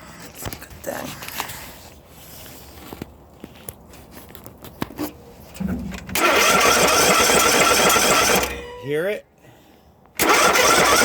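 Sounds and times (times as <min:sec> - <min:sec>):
engine rattling rumble: 0:05.1 - 0:08.7, 0:10.2 - 0:11.0.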